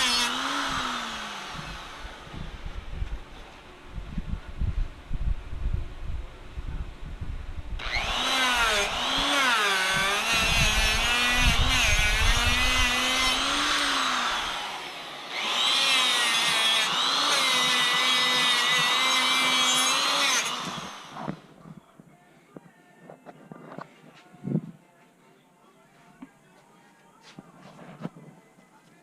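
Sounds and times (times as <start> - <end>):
electric power tool whining: 0.0 - 3.6, 7.8 - 21.6.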